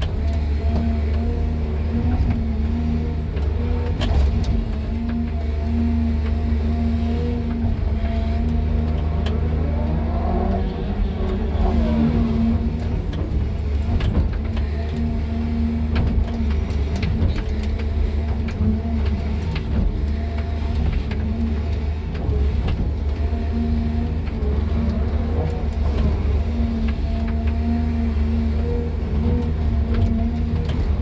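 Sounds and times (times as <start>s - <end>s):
excavator diesel engine running: 0.0s - 31.0s.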